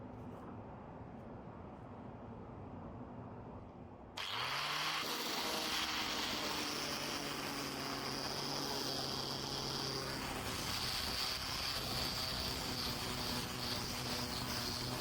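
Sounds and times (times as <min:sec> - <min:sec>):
power tool switch: 0:04.2 - 0:13.9
power tool motor running: 0:04.2 - 0:15.0.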